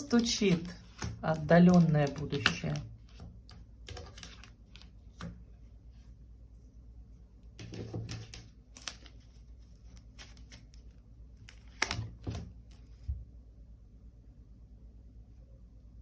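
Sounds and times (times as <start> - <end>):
cards shuffled and slapped: 7.6 - 13.1.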